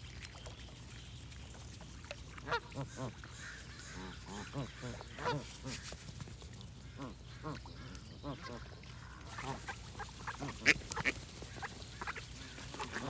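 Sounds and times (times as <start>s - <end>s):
ducks quacking: 7.0s - 13.0s.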